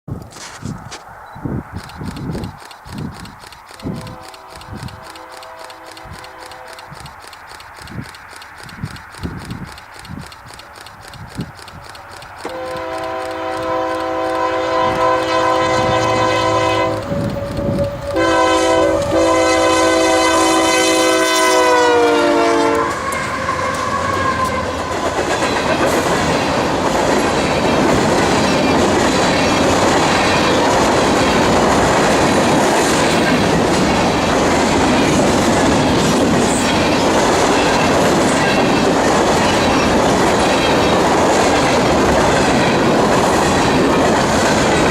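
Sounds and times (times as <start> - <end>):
train rolling on rails: 0.1 - 44.9
locomotive air horn blasts: 3.8 - 7.0, 12.5 - 24.9.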